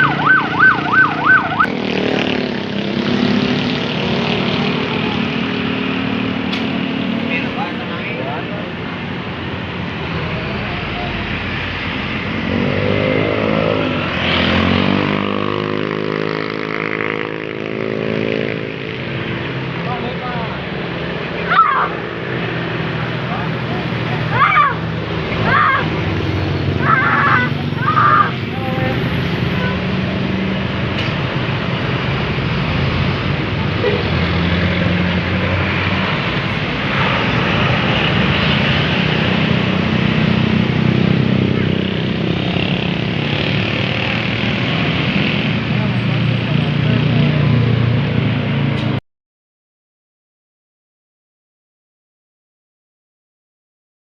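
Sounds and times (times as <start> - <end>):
bus engine passing: 0.0 - 49.0
road noise: 0.0 - 49.0.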